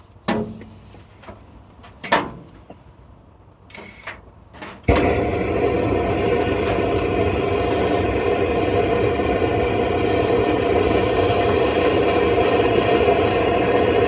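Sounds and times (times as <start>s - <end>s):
machine motor running loudly: 4.9s - 14.0s.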